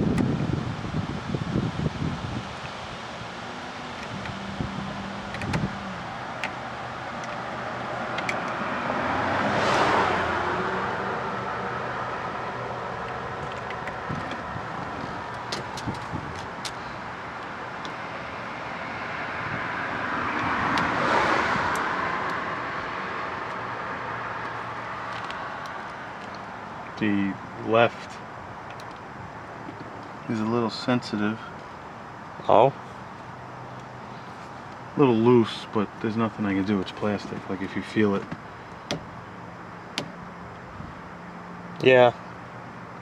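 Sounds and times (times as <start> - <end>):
cars passing by: 0.0 - 43.0
light clicks and knocks: 38.2 - 39.2.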